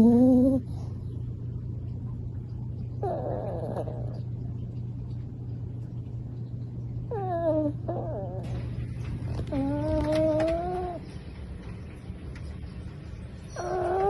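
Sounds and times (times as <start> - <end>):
small dog snoring: 0.0 - 0.8, 3.0 - 4.2, 7.1 - 8.5, 13.6 - 14.0
steady low hum: 0.0 - 14.0.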